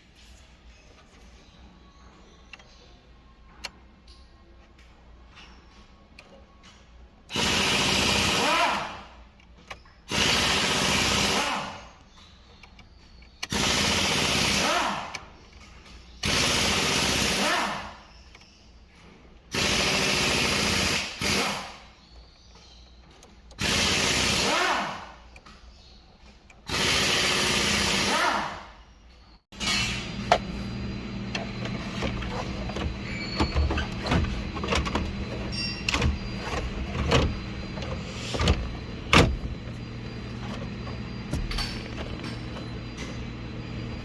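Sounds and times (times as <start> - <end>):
electric power drill bursts: 7.3 - 9.0, 10.1 - 11.8, 13.5 - 15.1, 16.2 - 17.8, 19.5 - 21.8, 23.6 - 25.1, 26.7 - 28.6.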